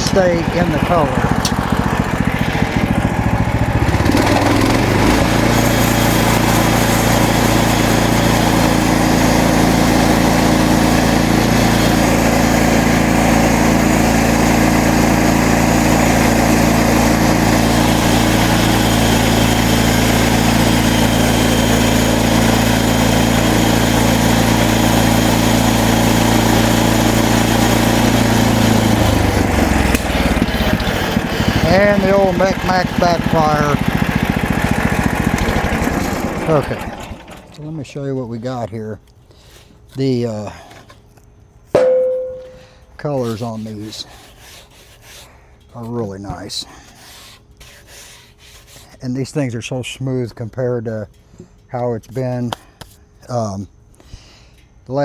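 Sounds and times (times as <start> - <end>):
saw blade cutting wood: 0.0 - 12.9, 41.8 - 45.3, 46.9 - 49.0
sawmill gas engine: 0.0 - 41.0, 41.8 - 54.6.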